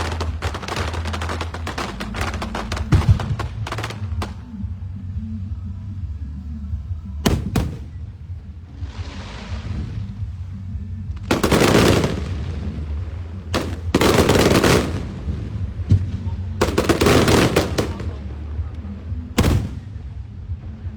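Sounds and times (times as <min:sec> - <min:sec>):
hissing crackle: 0:00.0 - 0:04.5
bursts of firework explosions: 0:00.0 - 0:04.6, 0:07.2 - 0:10.4, 0:11.1 - 0:20.6
firework bangs: 0:00.0 - 0:04.7, 0:07.3 - 0:10.4, 0:11.2 - 0:18.6, 0:19.4 - 0:20.2
low rumble: 0:00.0 - 0:20.9.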